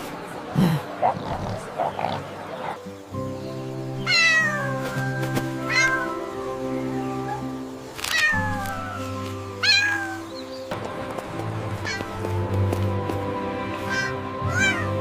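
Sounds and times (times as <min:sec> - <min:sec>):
background music with held notes: 0:02.3 - 0:15.0
cat meowing: 0:04.0 - 0:06.2, 0:08.1 - 0:10.2, 0:13.9 - 0:14.9.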